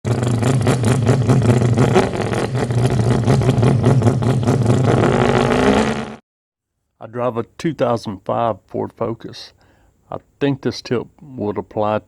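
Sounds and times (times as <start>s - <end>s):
engine humming: 0.1s - 5.1s.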